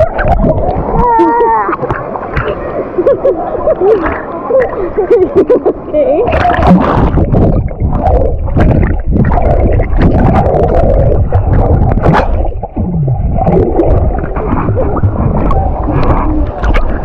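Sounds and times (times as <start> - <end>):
wind on microphone: 0.0 - 2.6, 6.2 - 17.0
rushing water: 0.0 - 17.0
water splashes: 0.0 - 17.0.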